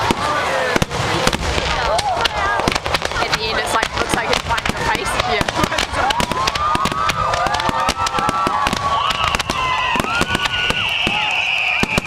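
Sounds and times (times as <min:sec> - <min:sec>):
fireworks bangs and crackles: 0:00.0 - 0:12.0
whistling firework shells: 0:04.1 - 0:12.0.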